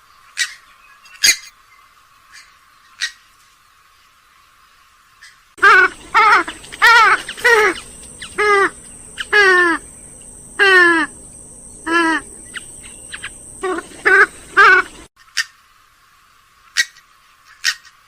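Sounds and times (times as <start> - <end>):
bird loud nasal calls: 5.6 - 15.5.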